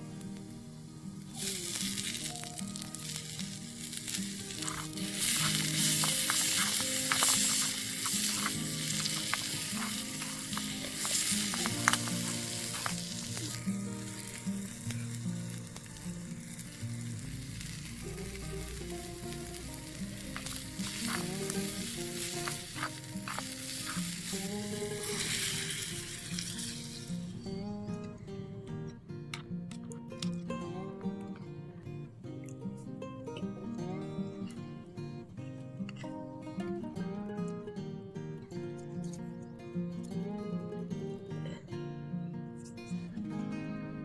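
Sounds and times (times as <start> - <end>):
food sizzling in a pan: 0.0 - 27.4.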